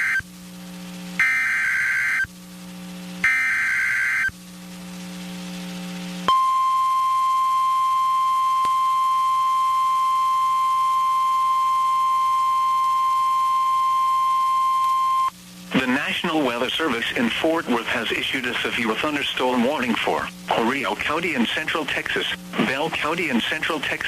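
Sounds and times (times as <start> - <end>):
steady warning alarm tone: 0.0 - 0.2, 1.2 - 2.3, 3.2 - 4.3, 6.3 - 15.3.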